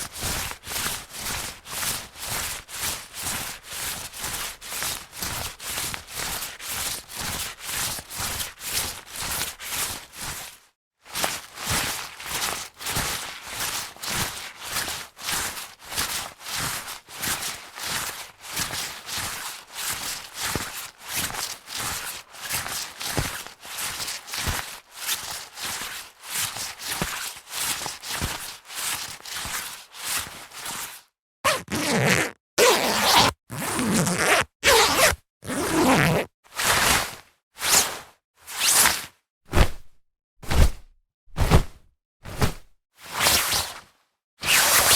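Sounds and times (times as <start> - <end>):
jacket fabric rasping: 31.5 - 36.3.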